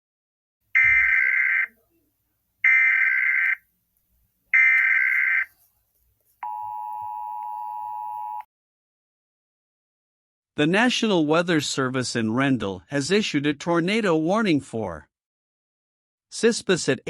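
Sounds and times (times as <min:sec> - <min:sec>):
two-tone alarm: 0:00.8 - 0:01.8, 0:02.6 - 0:03.6, 0:04.6 - 0:05.5, 0:06.4 - 0:08.5.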